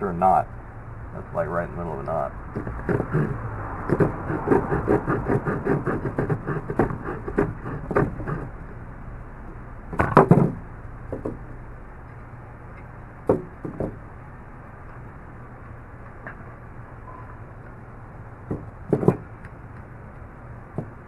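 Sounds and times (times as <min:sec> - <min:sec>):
tool and wood knocking: 0:02.6 - 0:04.4, 0:06.0 - 0:08.4, 0:13.3 - 0:14.0, 0:18.5 - 0:19.2
folding saw rasping through wood: 0:02.6 - 0:08.5.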